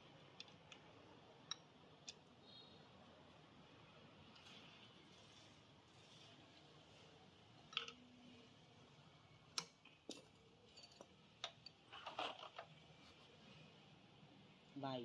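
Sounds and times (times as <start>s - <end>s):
faint room hum: 0.0s - 15.0s.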